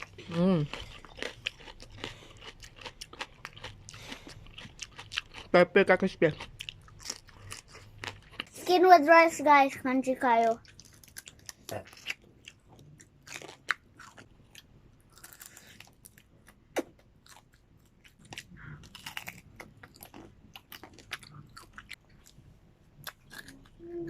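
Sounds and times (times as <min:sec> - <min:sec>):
wet chewing: 0:00.0 - 0:08.7, 0:10.4 - 0:22.4
crunching pork skin: 0:18.8 - 0:22.0.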